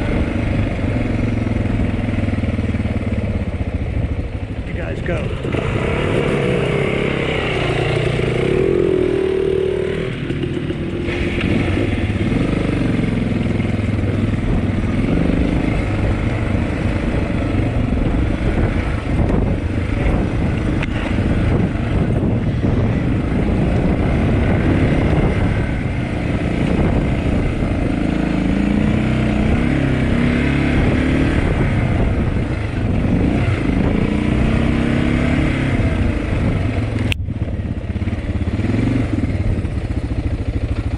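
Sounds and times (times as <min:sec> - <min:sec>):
dirt bike engine revving: 0:04.7 - 0:36.6.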